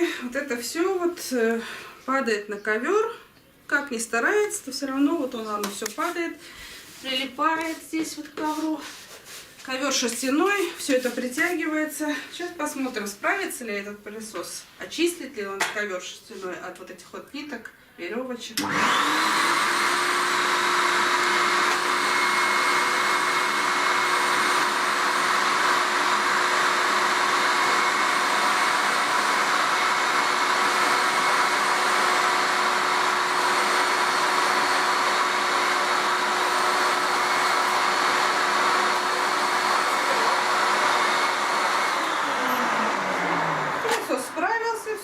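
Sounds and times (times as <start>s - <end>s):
vacuum cleaner whining: 18.6s - 45.0s.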